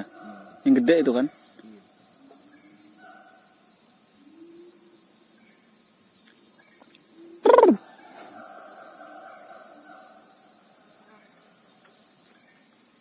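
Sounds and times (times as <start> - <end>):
insects droning: 0.0 - 13.0
faint distant calls: 7.2 - 10.1.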